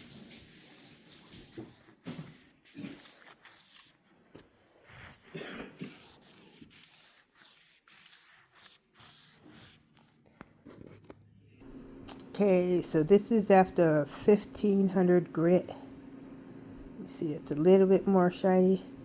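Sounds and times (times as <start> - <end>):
sandpaper rubbing a surface: 0.0 - 4.0, 4.8 - 9.8.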